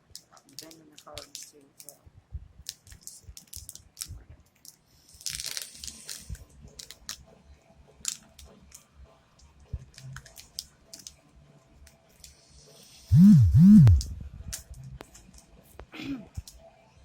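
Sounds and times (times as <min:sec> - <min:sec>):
foil wrapper crinkling: 0:05.2 - 0:06.3
wrapper tearing: 0:05.2 - 0:06.3.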